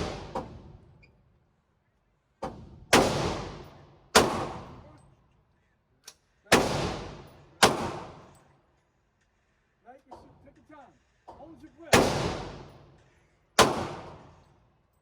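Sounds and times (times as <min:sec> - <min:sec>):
gunshots with echo: 0:00.0 - 0:00.4, 0:02.9 - 0:04.8, 0:06.5 - 0:08.3, 0:11.9 - 0:12.7, 0:13.6 - 0:14.3.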